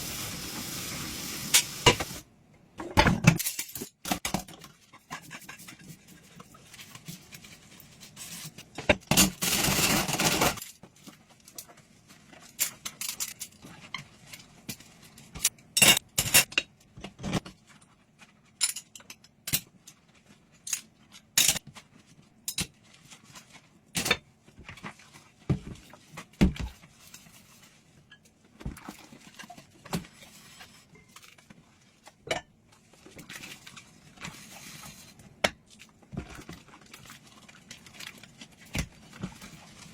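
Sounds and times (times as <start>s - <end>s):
dishes and cutlery clinking: 15.3s - 17.4s, 32.3s - 32.5s.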